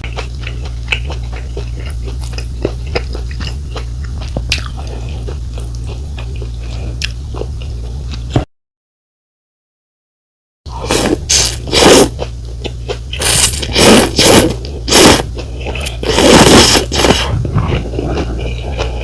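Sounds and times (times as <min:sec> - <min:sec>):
low steady hum: 0:00.0 - 0:08.5, 0:10.7 - 0:19.0
slurping noodles: 0:10.7 - 0:12.3, 0:13.2 - 0:19.0.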